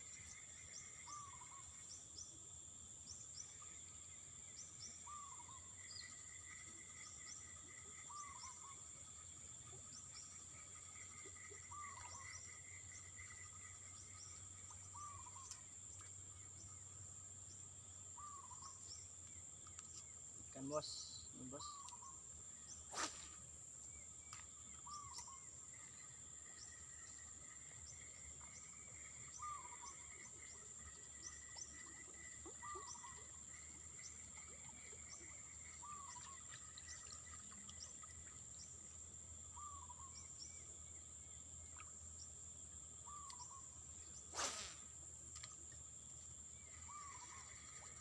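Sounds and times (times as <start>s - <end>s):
bird call: 14.9s - 15.6s, 32.5s - 33.4s.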